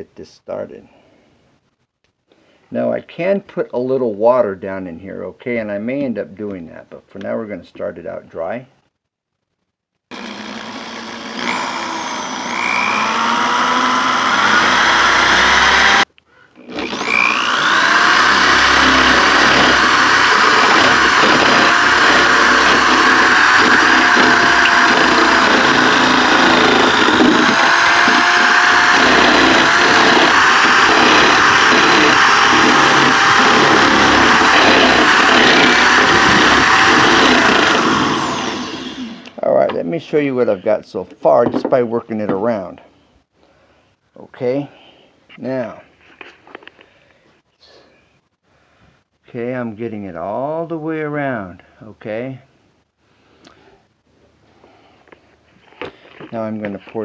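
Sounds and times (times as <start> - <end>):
power drill grinding whine: 10.1 - 39.4.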